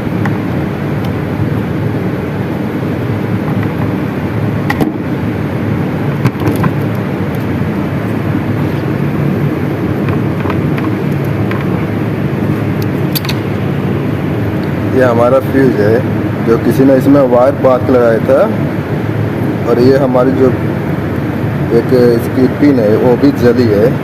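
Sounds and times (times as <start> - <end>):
loud low machine hum: 0.0 - 24.0.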